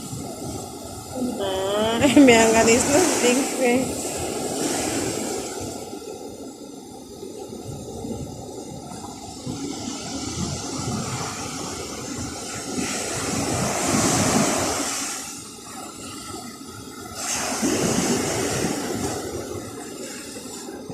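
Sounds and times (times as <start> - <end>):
ocean waves washing ashore: 0.0 - 20.9.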